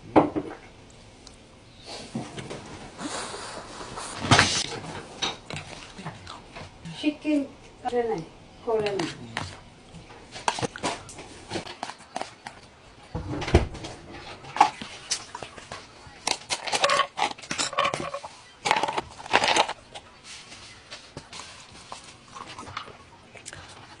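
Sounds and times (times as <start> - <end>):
low thump: 13.2 - 14.0.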